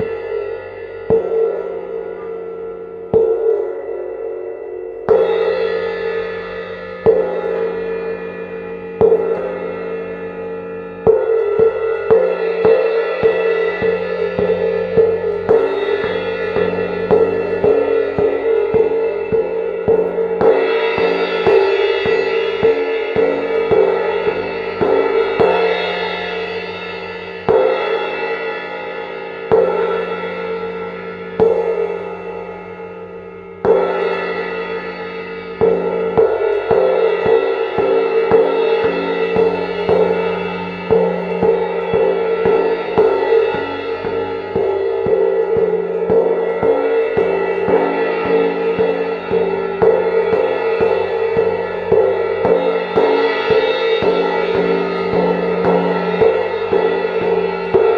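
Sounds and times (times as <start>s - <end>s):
cymbal rolls with mallets: 0.0s - 57.9s
single cymbal strokes ringing: 0.0s - 57.9s.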